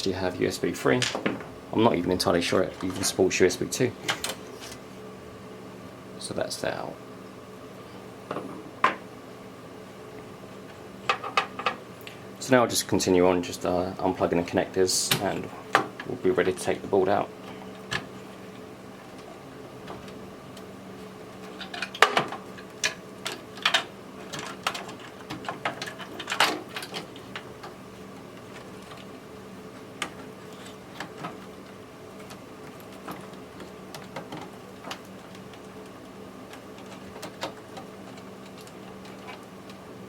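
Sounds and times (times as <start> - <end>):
steady low hum: 0.0 - 40.0
cable connectors clicking and rattling: 21.4 - 27.8, 30.0 - 39.8.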